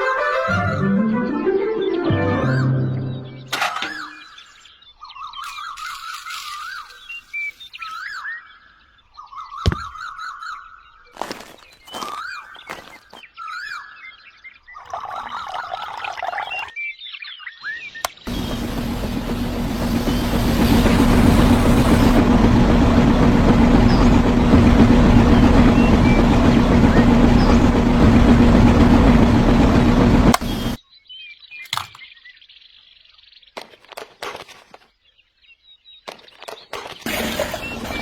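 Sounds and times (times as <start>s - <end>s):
loud mechanical hum: 18.3s - 30.8s, 36.1s - 38.0s
rushing noise: 18.3s - 30.8s.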